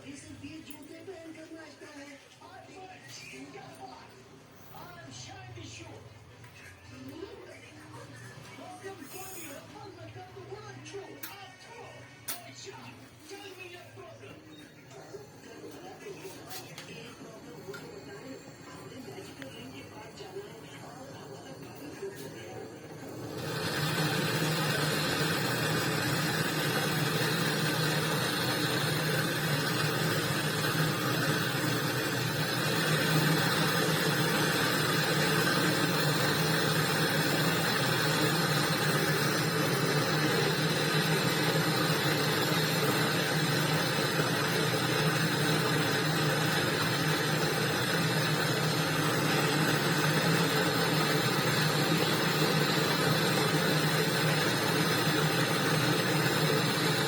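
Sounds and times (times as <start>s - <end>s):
small electric motor humming: 22.5s - 57.0s.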